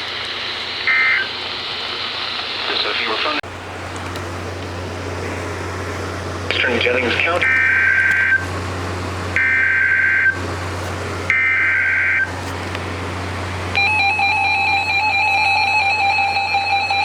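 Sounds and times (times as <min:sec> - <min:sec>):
steady attention tone: 0:02.8 - 0:10.6, 0:11.2 - 0:17.0.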